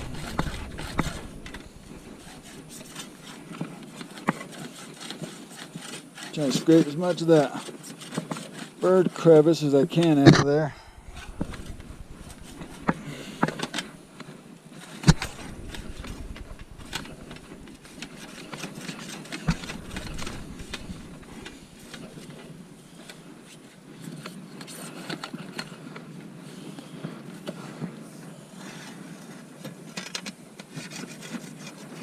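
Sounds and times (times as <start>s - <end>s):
scraping inside a plastic pipe: 0.0s - 9.3s, 10.0s - 25.7s.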